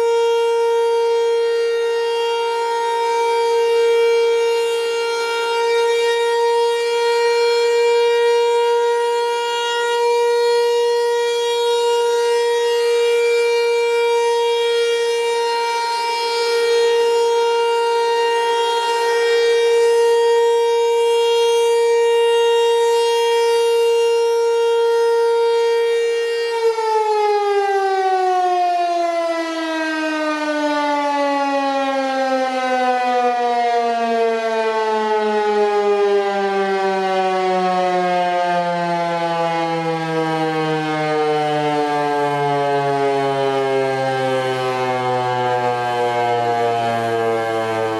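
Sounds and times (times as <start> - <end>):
outdoor warning siren: 0.0 - 47.9.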